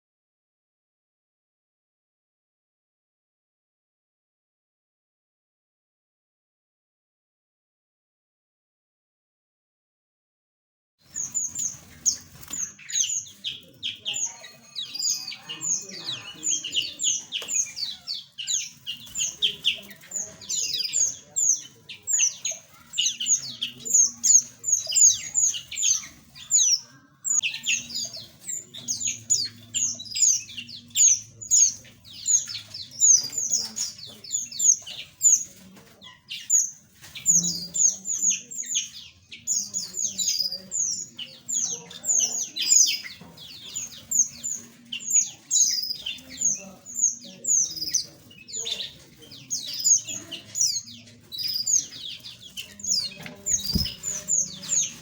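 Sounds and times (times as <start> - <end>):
small birds chirping: 11.0 - 55.0.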